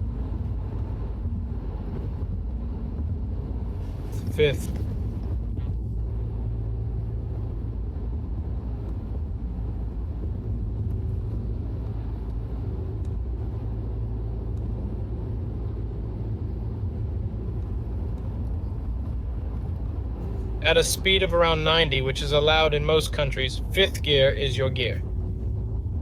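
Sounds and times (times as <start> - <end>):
diesel engine drone in cabin: 0.0 - 26.0
road and tyre rumble: 0.0 - 26.0.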